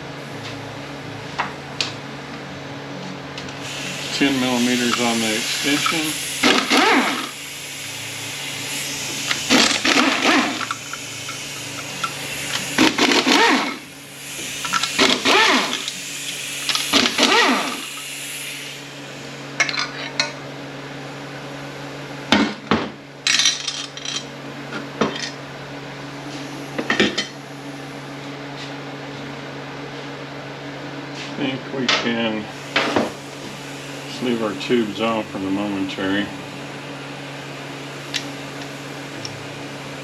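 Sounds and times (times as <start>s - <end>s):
power ratchet running: 3.5s - 19.1s
metal parts clinking and knocking: 23.3s - 24.3s.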